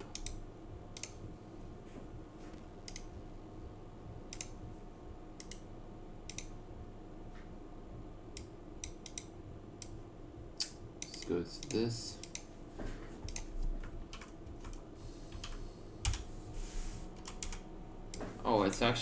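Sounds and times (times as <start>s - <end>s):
computer mouse clicks: 0.0s - 1.2s, 2.8s - 3.1s, 4.3s - 4.6s, 5.4s - 5.7s, 6.3s - 6.6s, 8.3s - 10.0s, 10.6s - 12.5s, 13.2s - 16.3s, 17.1s - 18.9s
faint steady hum: 0.0s - 19.0s.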